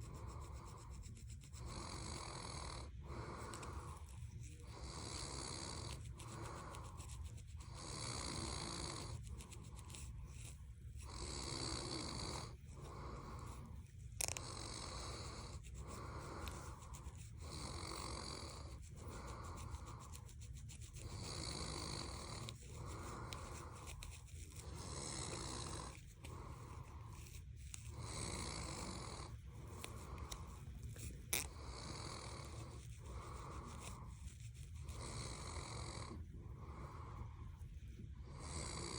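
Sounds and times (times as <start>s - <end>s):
fingernails scratching scalp: 0.0s - 37.0s
person snoring: 1.6s - 7.0s, 7.6s - 9.2s, 11.0s - 16.8s, 17.4s - 20.1s, 21.0s - 23.9s, 24.6s - 27.0s, 27.9s - 30.6s, 31.4s - 34.1s, 34.9s - 37.3s, 38.2s - 38.9s.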